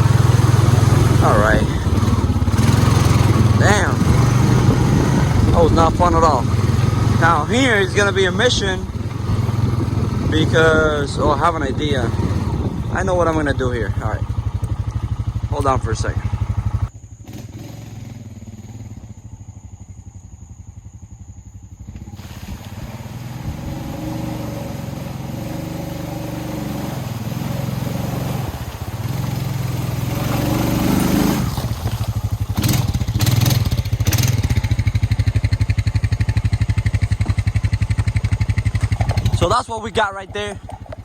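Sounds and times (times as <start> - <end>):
atv engine running: 0.0 - 41.0.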